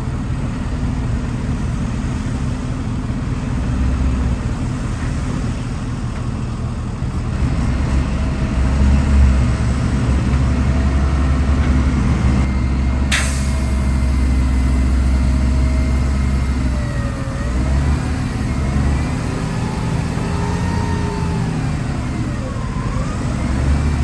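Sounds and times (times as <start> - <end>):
heavy diesel engine rumbling: 0.0 - 24.0.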